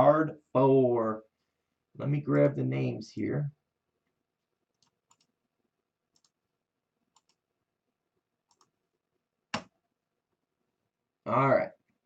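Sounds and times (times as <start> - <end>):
computer mouse clicking: 4.7 - 5.3, 6.1 - 6.4, 7.1 - 7.4, 8.5 - 8.8.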